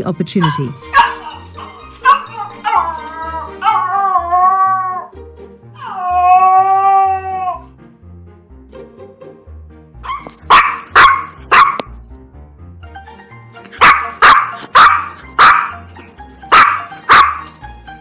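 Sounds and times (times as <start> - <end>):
background music: 0.0 - 18.0
dog barking: 0.4 - 1.3, 10.5 - 11.9, 13.8 - 15.8, 16.5 - 17.5.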